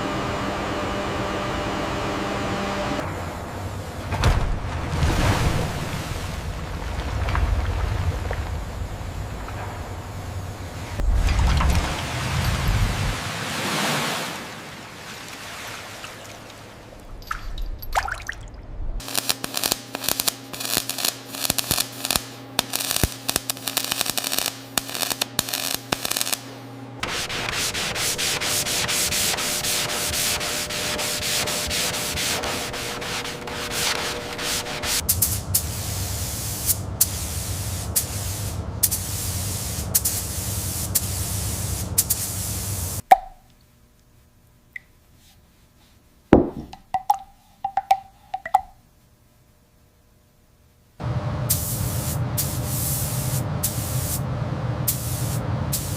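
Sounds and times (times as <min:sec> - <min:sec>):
steady hum: 0:00.0 - 0:13.2, 0:18.6 - 0:45.0
low motor hum: 0:00.0 - 0:13.3, 0:25.0 - 0:38.8, 0:51.0 - 0:55.9
scraping and rubbing: 0:27.0 - 0:35.0
even spraying hiss: 0:27.0 - 0:43.0, 0:51.5 - 0:54.2, 0:54.9 - 0:55.9.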